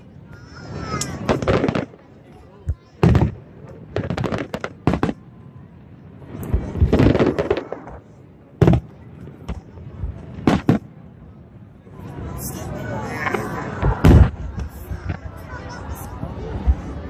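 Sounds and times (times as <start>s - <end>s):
fireworks crackling rush: 0.0s - 11.3s, 13.1s - 15.5s
fireworks cracks and bangs: 1.0s - 5.3s, 6.4s - 11.0s, 13.2s - 15.3s.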